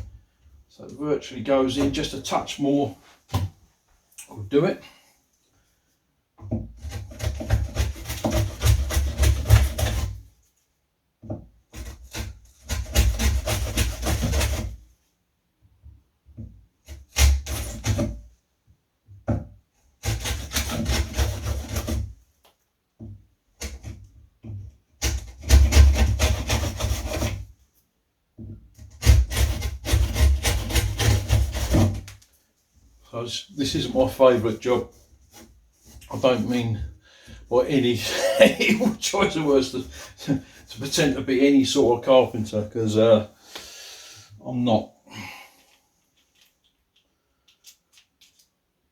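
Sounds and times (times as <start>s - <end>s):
hand tool scraping wood: 1.6s - 3.4s, 6.4s - 10.2s, 11.7s - 14.8s, 16.8s - 18.3s, 20.0s - 22.2s, 23.6s - 27.6s, 28.5s - 32.3s, 33.6s - 41.9s.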